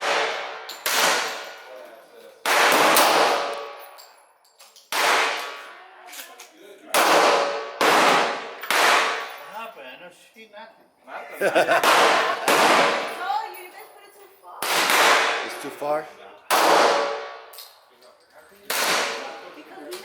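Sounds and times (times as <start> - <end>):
pistol shots with ringing decay: 0.0 - 1.6, 2.4 - 3.8, 7.0 - 9.3, 11.8 - 13.2, 14.6 - 15.6, 16.5 - 17.5, 18.7 - 19.2.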